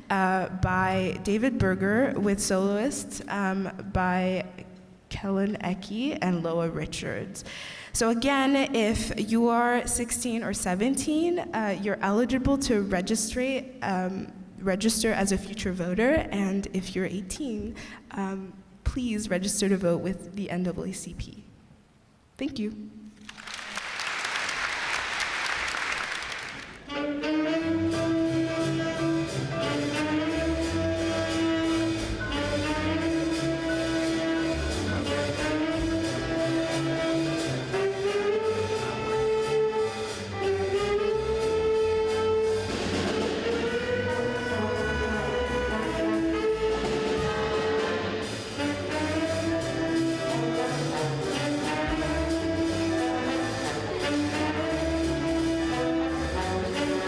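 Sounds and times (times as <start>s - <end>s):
drums keeping a steady beat: 23.8s - 57.0s
brass riffing: 24.7s - 57.0s.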